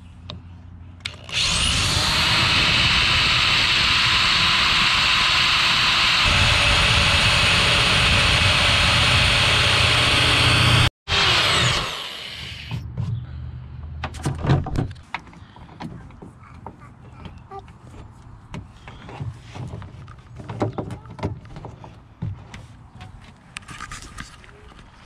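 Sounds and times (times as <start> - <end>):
power drill drilling: 1.0 - 12.7.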